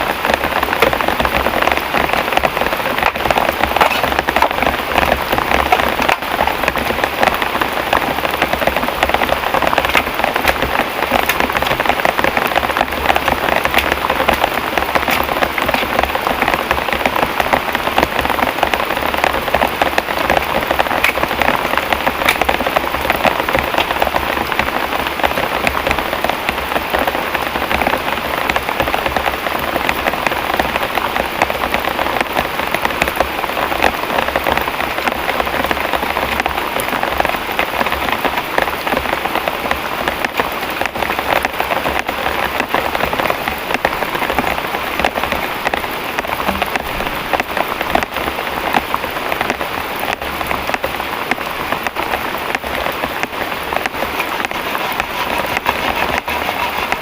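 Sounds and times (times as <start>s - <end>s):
heavy rain pattering: 0.0s - 57.0s.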